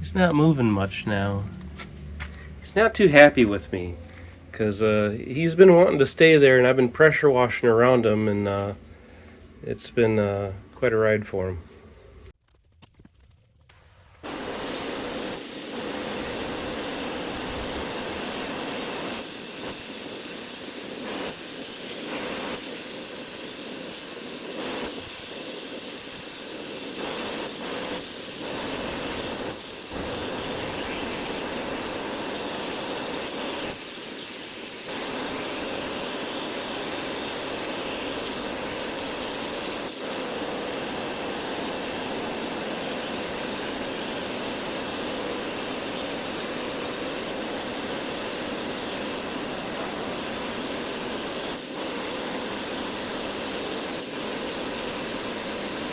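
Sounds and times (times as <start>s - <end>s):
pressure washer jet spraying: 14.2s - 55.9s.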